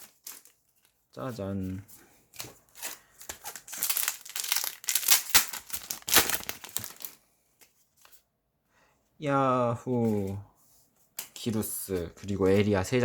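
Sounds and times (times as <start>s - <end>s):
foil wrapper crinkling and tearing: 0.0s - 1.0s, 2.8s - 7.2s.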